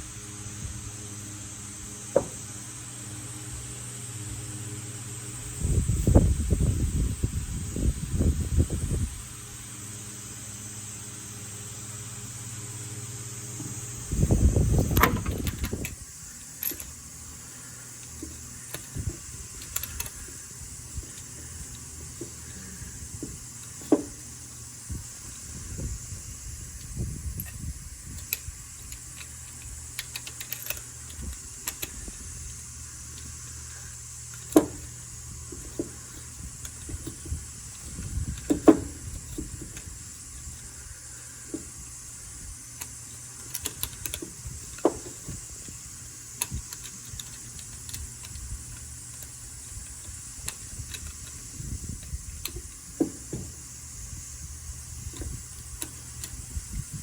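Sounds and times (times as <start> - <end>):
steady hiss: 0.0 - 57.0
clicks and knocks of handling: 14.9 - 17.0, 18.0 - 20.4, 28.2 - 33.4, 34.3 - 34.9, 42.8 - 53.6.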